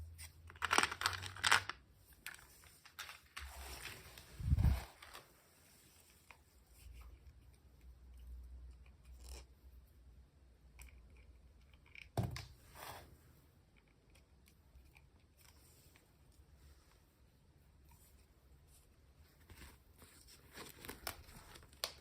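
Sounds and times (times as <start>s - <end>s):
packaging clicks and rustles: 0.5s - 5.4s.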